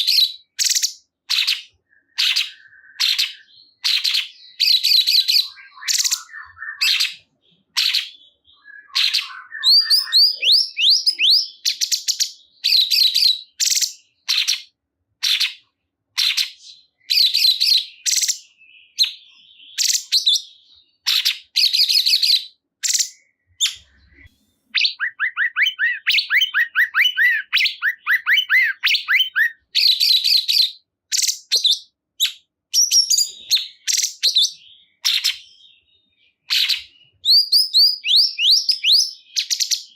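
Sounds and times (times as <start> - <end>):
bird chirping: 0.0 - 39.9.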